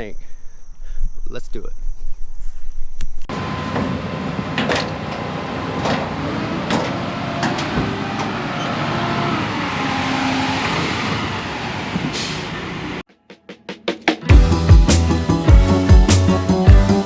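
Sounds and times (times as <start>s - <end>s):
construction machine engine running: 3.3s - 13.0s.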